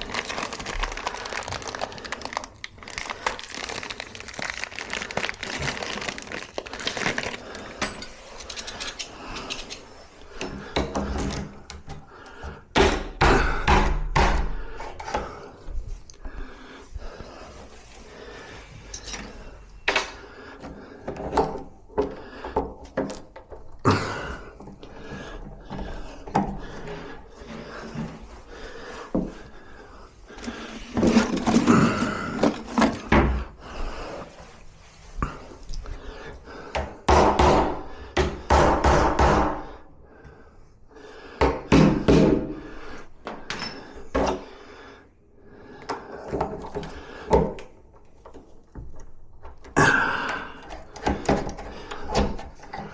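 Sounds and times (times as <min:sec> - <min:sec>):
tools knocking on wooden door: 0:12.7 - 0:14.6.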